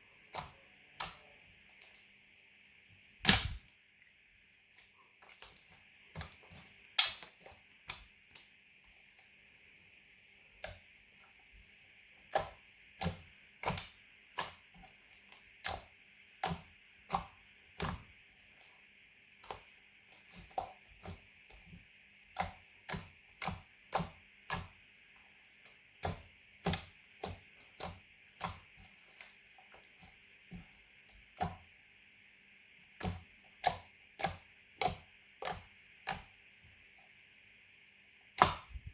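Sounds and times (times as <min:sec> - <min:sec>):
slime pops and clicks: 0:03.2 - 0:03.6.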